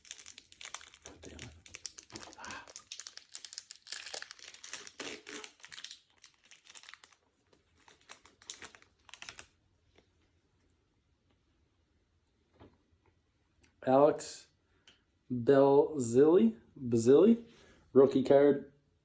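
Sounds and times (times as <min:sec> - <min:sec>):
wrapper crinkling and tearing: 0:00.0 - 0:09.6.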